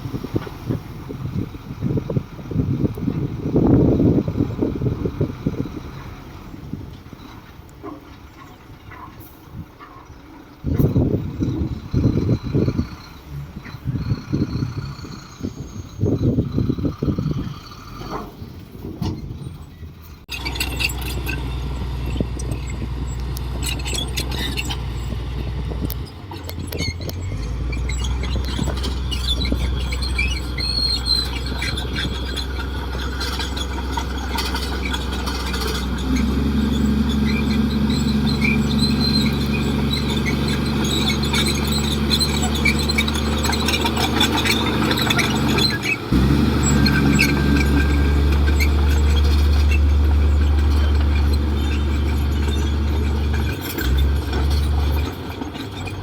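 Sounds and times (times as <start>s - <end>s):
bulldozer diesel engine running: 0.0s - 56.0s
high squeals and clicks: 20.3s - 56.0s.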